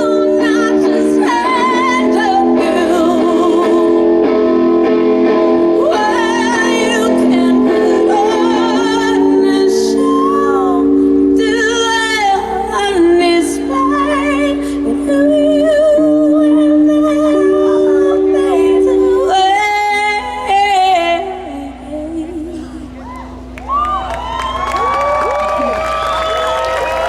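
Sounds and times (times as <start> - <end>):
live rock band music: 0.6 - 10.0.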